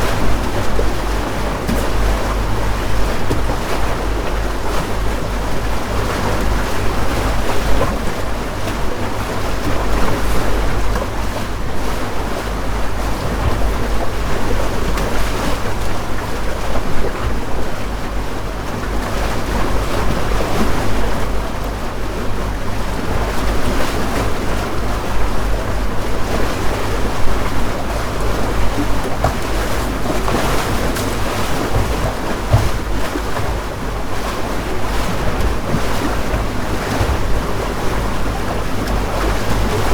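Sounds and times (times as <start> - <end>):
boat motor droning: 0.0 - 39.9
water lapping against hull: 0.0 - 39.9.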